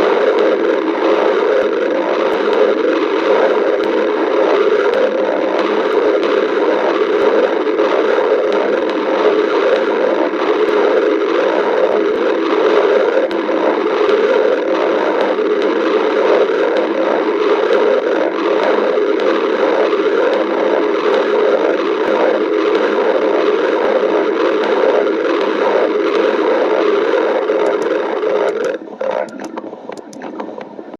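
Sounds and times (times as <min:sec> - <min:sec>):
stomach growling: 0:00.0 - 0:30.9
faint clicks: 0:21.1 - 0:30.8.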